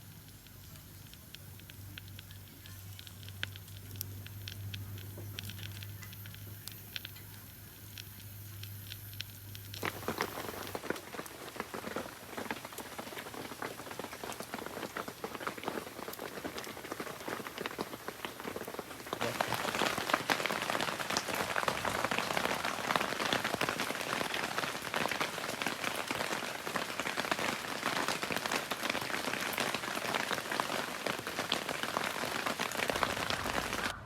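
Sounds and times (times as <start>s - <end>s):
low steady hum: 0.0s - 10.9s, 32.9s - 34.0s
food sizzling in a pan: 0.0s - 34.0s.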